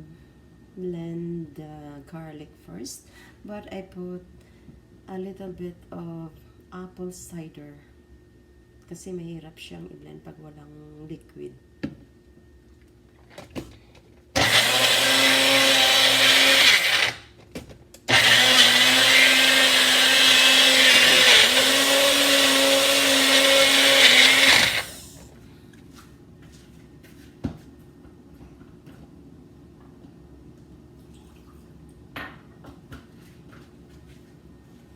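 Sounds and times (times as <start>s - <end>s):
electric blender running: 14.4s - 17.3s, 18.1s - 25.2s.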